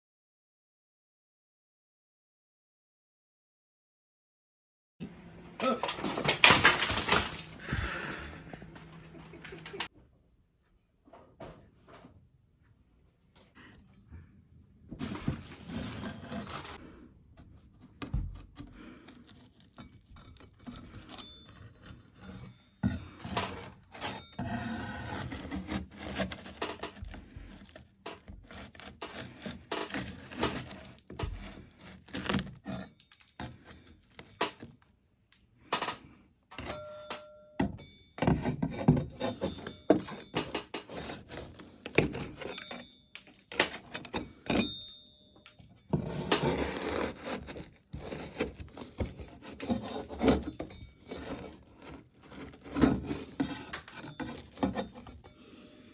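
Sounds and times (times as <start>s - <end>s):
metal spatula scraping a wall: 15.0s - 34.9s, 37.7s - 45.0s, 45.6s - 55.9s.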